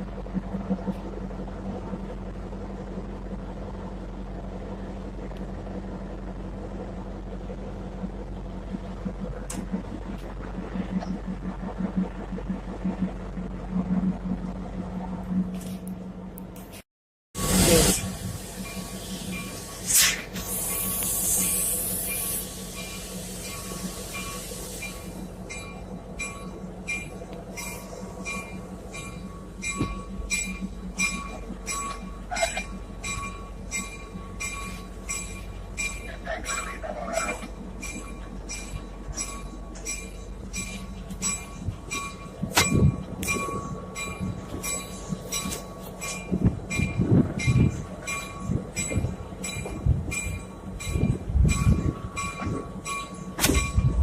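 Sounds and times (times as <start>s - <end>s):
engine drone: 0.0s - 16.8s
train rumbling: 0.0s - 16.8s, 17.4s - 54.0s
hiss: 17.4s - 25.2s.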